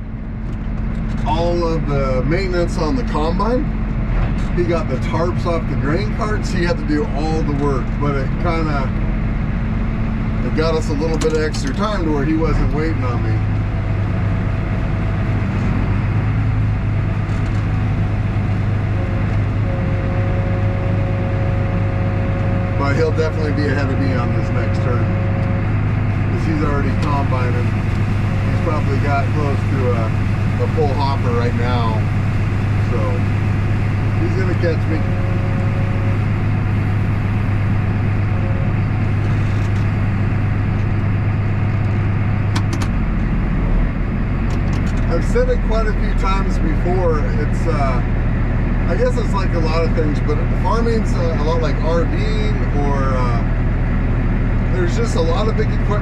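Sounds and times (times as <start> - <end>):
faint steady whine: 0.0 - 56.0
tractor engine drone: 0.0 - 56.0
sharp clicks: 42.5 - 43.0.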